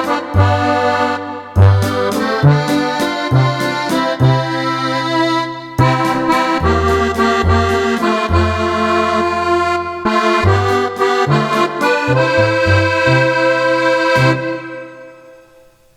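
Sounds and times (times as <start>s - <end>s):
accordion melody with bass notes: 0.0s - 15.9s.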